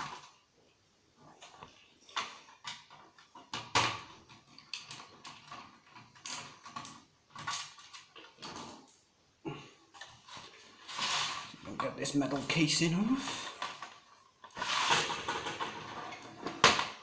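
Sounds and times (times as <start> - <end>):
tools and parts clicking and knocking: 1.4 - 9.1, 13.4 - 17.0.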